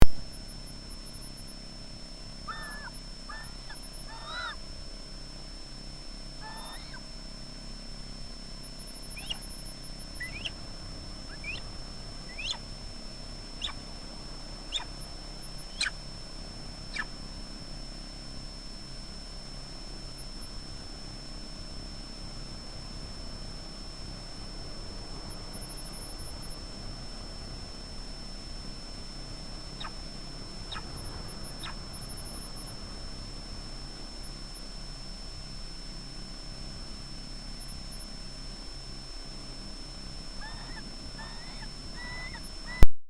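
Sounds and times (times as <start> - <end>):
harsh bird calls: 2.5 - 4.6, 6.4 - 7.0, 9.2 - 9.5, 10.2 - 10.6, 11.3 - 11.7, 12.3 - 12.6, 13.6 - 13.8, 14.7 - 14.9, 40.4 - 42.8
sharp sweeping bird whistles: 2.5 - 4.6, 6.4 - 7.0, 9.2 - 9.4, 10.2 - 10.6, 11.3 - 11.6, 12.3 - 12.6, 13.6 - 13.8, 14.7 - 14.9, 40.4 - 42.8.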